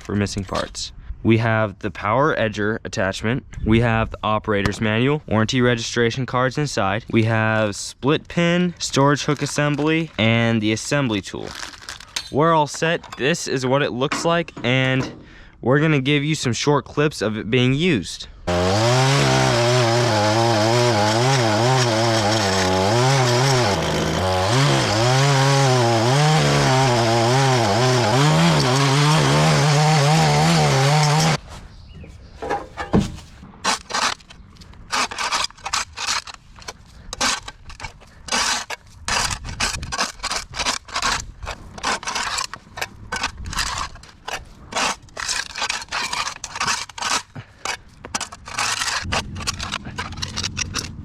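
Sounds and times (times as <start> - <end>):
short scraping and crackling: 8.8 - 13.5, 32.4 - 51.0.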